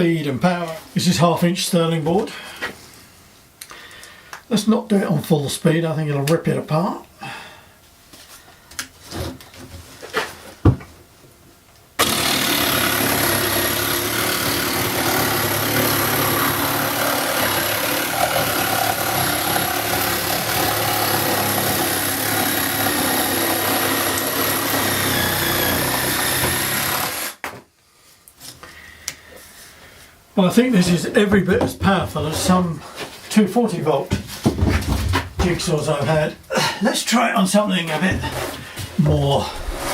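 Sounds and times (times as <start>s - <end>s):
jigsaw sawing through board: 12.0s - 27.4s
knocks: 34.1s - 36.2s.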